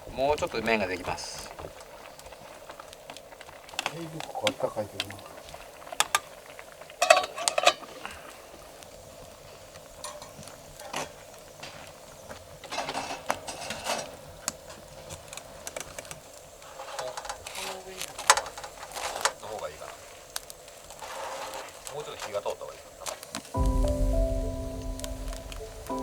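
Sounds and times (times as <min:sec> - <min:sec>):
cookware clinking and clattering: 0:07.0 - 0:07.9, 0:10.0 - 0:11.0.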